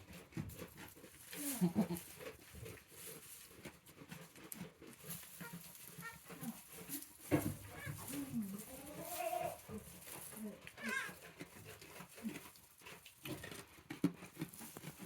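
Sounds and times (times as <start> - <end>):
faint rustling: 4.9 - 13.0
goats calling: 7.7 - 9.8, 10.8 - 11.2.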